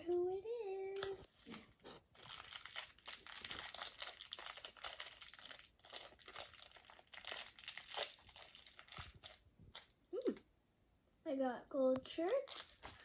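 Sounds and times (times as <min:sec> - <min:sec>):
plastic wrapping crinkling: 0:01.0 - 0:10.4.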